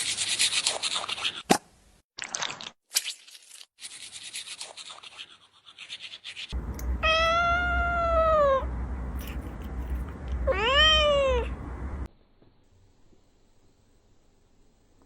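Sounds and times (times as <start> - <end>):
scratchy rubbing: 0.0 - 1.4, 3.8 - 6.7
cat meowing: 6.9 - 8.7, 10.4 - 11.6.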